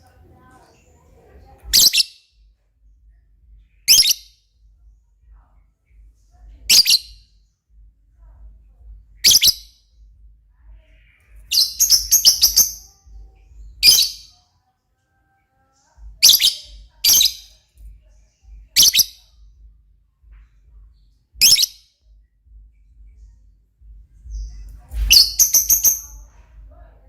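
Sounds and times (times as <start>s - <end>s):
bird chirping: 10.9s - 14.4s, 21.3s - 26.4s.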